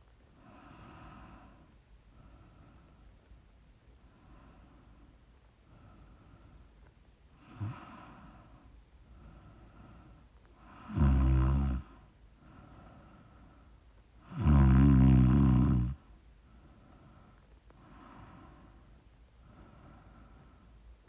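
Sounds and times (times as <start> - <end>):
soft breathing: 0.4 - 11.0, 11.8 - 14.2, 16.4 - 21.0
woman snoring: 10.7 - 11.9, 14.3 - 16.0.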